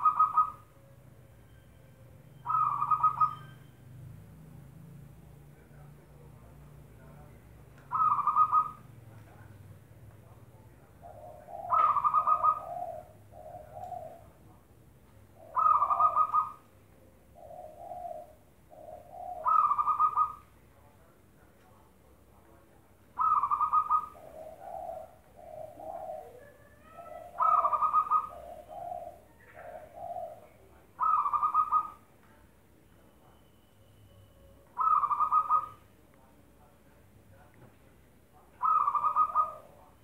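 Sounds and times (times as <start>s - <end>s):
dove cooing: 0.0s - 0.9s, 2.4s - 3.6s, 7.9s - 8.8s, 10.9s - 14.4s, 15.4s - 20.5s, 23.2s - 32.0s, 34.8s - 35.8s, 38.6s - 40.0s.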